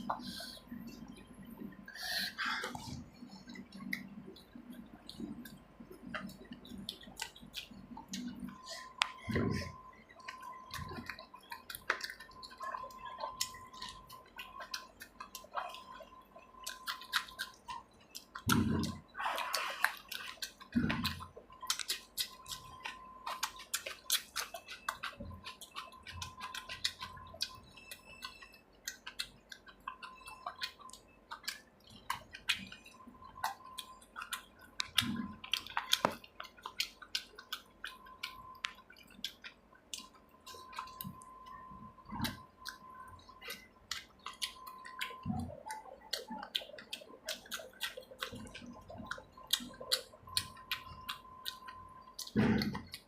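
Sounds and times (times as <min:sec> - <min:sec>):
person chewing food: 0:00.0 - 0:53.0.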